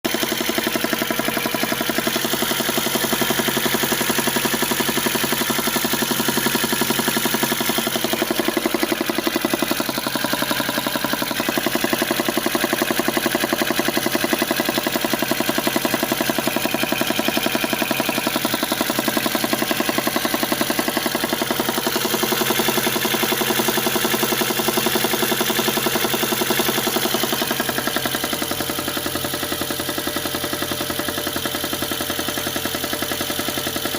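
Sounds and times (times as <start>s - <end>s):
car engine idling with knocking: 0.0s - 33.9s.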